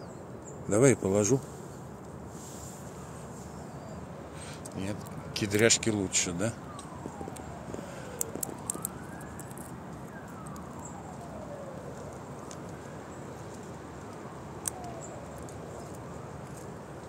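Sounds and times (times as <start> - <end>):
background noise: 0.0 - 17.0
faint rising and falling whines: 1.5 - 17.0
squirrel cracking nut shells: 6.7 - 11.2, 11.9 - 17.0.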